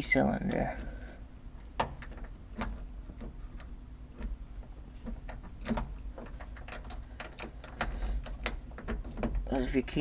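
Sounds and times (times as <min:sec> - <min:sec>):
key wiggling in lock cylinder: 0:05.2 - 0:09.4.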